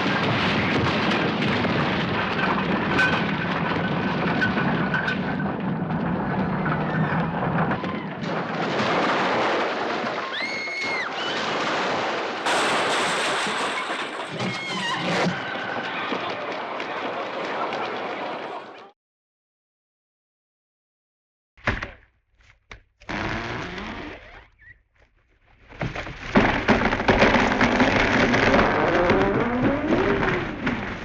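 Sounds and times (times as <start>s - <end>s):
crashing and rumbling debris: 0.0s - 16.4s, 25.6s - 31.0s.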